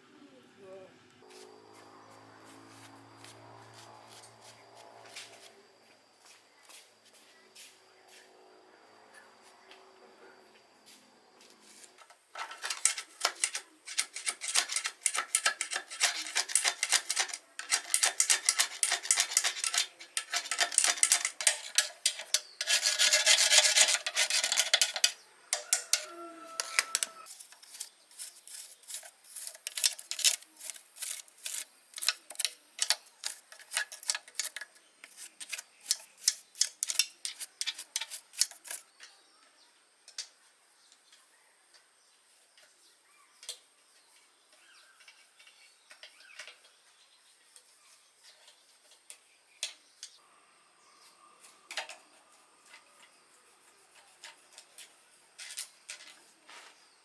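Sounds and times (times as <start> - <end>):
filing or sanding strokes: 12.5 - 25.2, 52.3 - 55.4.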